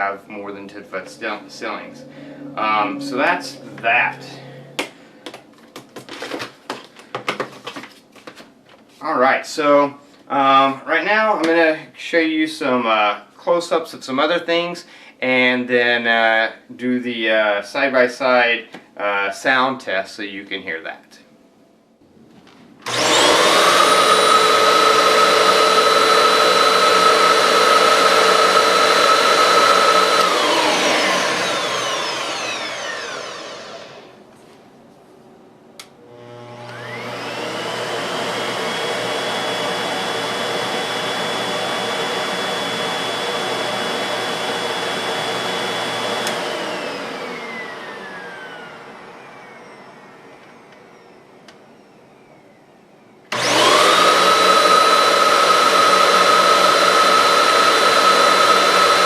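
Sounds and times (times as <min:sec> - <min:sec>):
quieter vacuum cleaner whining: 0:00.0 - 0:05.5, 0:22.8 - 0:34.4, 0:35.8 - 0:59.0
loud vacuum cleaner motor whining: 0:00.4 - 0:05.0, 0:22.8 - 0:34.2, 0:35.9 - 0:59.0.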